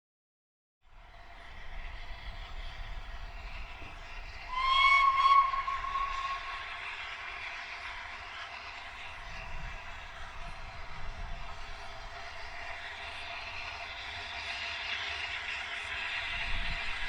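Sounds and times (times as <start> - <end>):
steam hissing: 1.0 - 17.0
steam locomotive whistle: 3.8 - 7.6.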